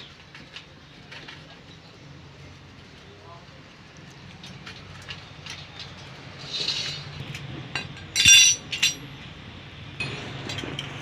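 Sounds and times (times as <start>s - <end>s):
metal tools clicking: 4.4s - 9.1s.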